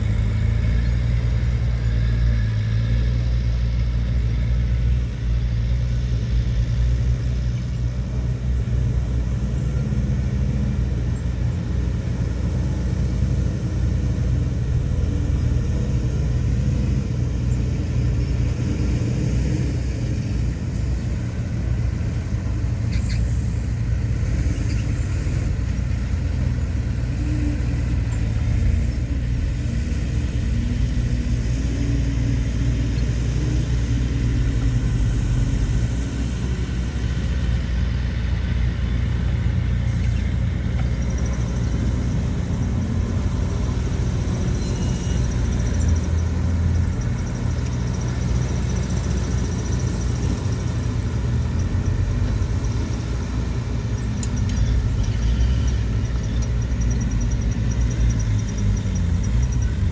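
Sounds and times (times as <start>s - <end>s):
heavy diesel machinery rumbling: 0.0s - 59.9s
faint clicks: 54.1s - 55.2s.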